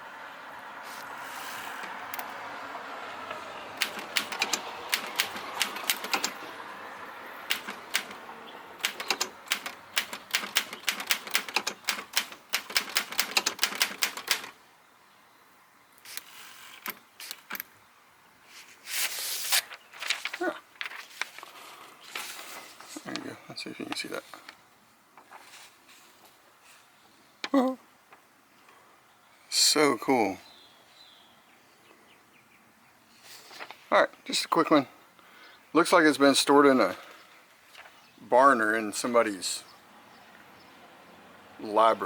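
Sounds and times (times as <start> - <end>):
typewriter key clacks: 3.8 - 6.4, 7.5 - 8.2, 8.8 - 14.6
scattered clicks: 3.8 - 6.5, 7.5 - 14.6.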